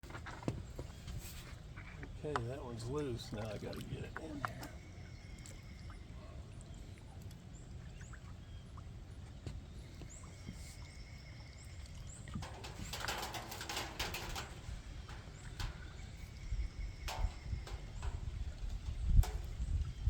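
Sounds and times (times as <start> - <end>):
dense rustling and scratching: 0.0 - 4.6, 12.4 - 19.8
birds calling: 0.1 - 20.0
low wind rumble: 4.7 - 20.0.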